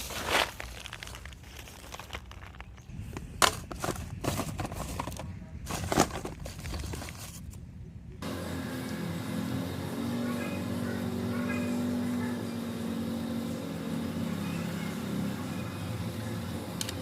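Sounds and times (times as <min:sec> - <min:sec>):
rubbish rustling and crinkling: 0:00.0 - 0:07.6.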